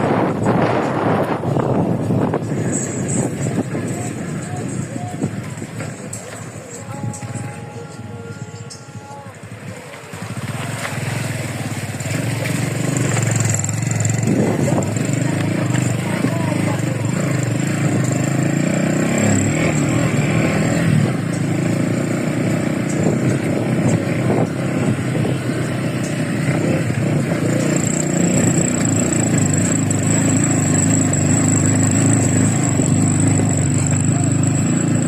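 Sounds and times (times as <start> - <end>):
vehicle engine and road rumble: 0.0 - 35.0.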